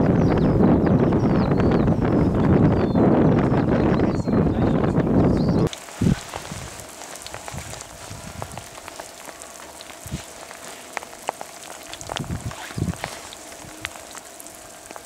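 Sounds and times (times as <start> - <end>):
wind-like roar: 0.0 - 15.0
rain on hard surface: 5.6 - 15.0.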